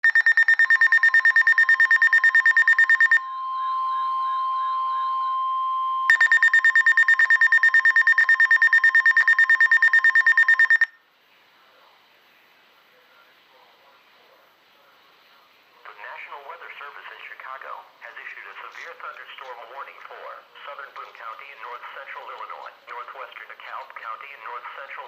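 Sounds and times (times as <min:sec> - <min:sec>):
rapidly pulsing electronic beep: 0:00.0 - 0:03.3, 0:06.0 - 0:11.0.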